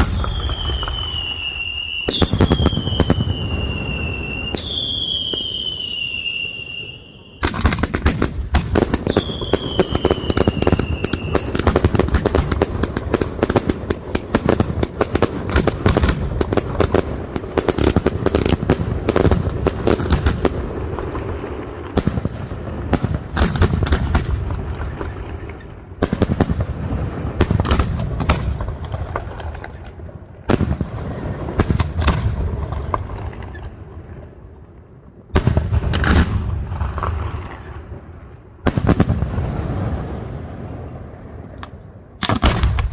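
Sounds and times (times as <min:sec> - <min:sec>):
whistling firework falling in pitch: 0:00.0 - 0:07.9, 0:08.5 - 0:12.6
firework bangs and crackles: 0:00.0 - 0:42.9.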